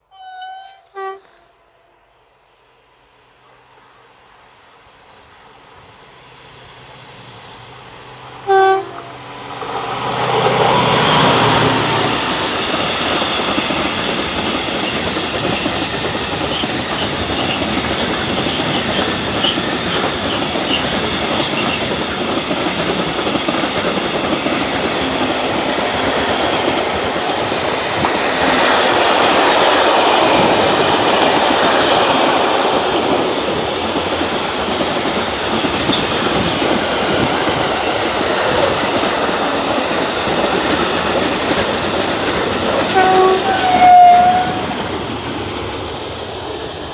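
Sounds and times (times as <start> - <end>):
train horn blast: 0.0 - 2.2, 8.4 - 12.4, 28.3 - 29.7, 42.8 - 44.8
train wheels running over rails: 5.1 - 46.9.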